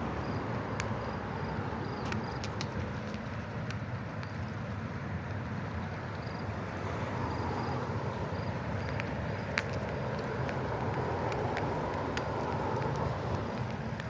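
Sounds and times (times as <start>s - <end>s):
outdoor rumble and hiss: 0.0s - 14.0s
sharp clicks: 1.9s - 5.4s, 8.7s - 14.0s.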